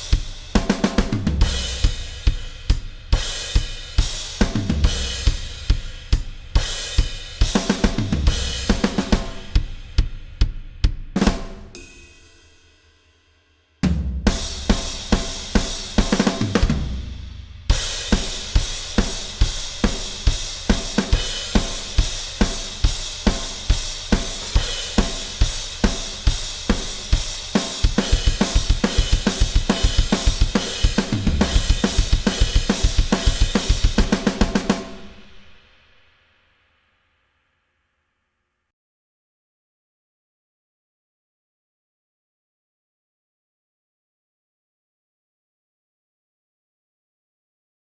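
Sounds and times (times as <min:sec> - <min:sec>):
drum kit rock beat: 0:00.0 - 0:12.6, 0:13.8 - 0:35.6.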